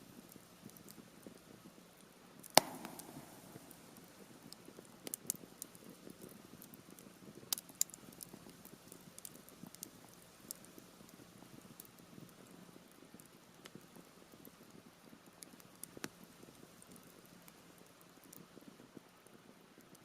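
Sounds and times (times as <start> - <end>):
campfire crackling: 0.0 - 20.0
wood popping: 2.6 - 4.2.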